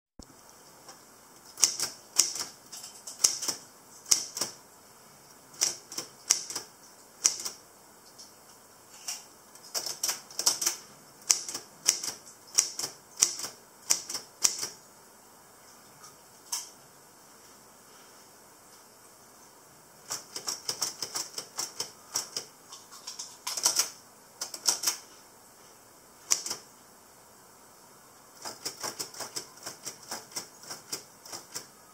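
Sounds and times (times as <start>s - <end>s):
typewriter keys clacking: 1.6s - 4.6s, 5.6s - 7.6s, 9.6s - 14.8s, 20.1s - 25.0s, 26.3s - 26.6s, 28.4s - 31.7s.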